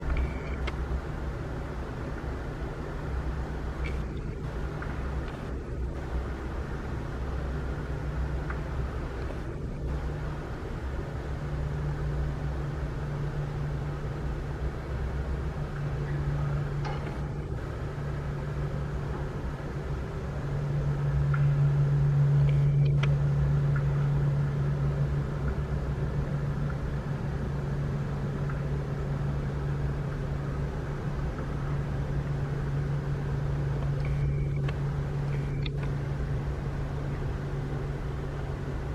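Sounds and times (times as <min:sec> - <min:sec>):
jet engines droning: 0:00.0 - 0:38.9.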